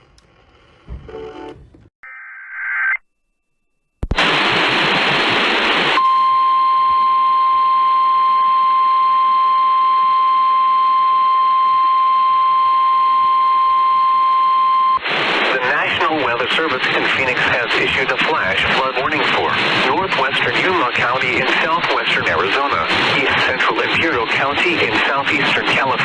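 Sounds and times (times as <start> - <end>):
click: 0.0 - 1.9
radio static: 15.0 - 26.0.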